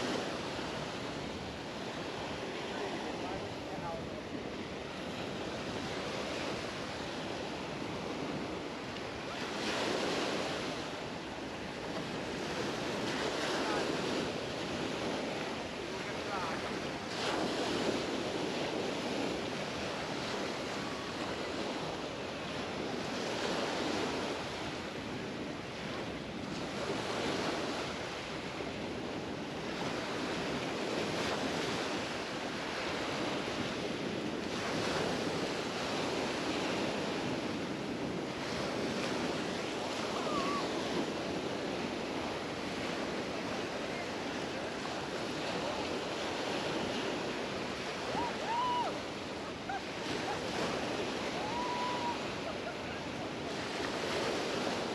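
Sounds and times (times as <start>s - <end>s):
surf washing onto beach: 0.0s - 54.9s.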